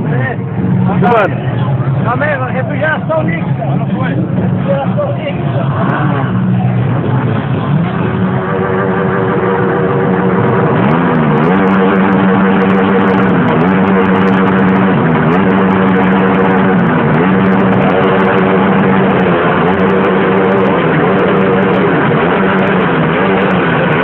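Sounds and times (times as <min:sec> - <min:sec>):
motorcycle engine revving high: 0:00.0 - 0:24.0.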